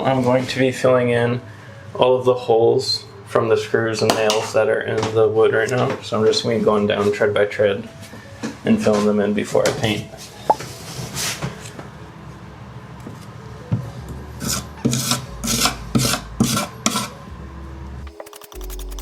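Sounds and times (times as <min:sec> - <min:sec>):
scraping strokes on wood: 0:14.4 - 0:17.1, 0:18.1 - 0:19.0.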